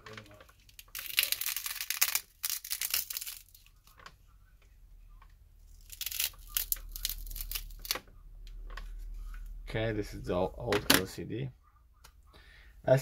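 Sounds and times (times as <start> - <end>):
adhesive crackling and tearing: 0.1 - 4.1, 5.7 - 8.0.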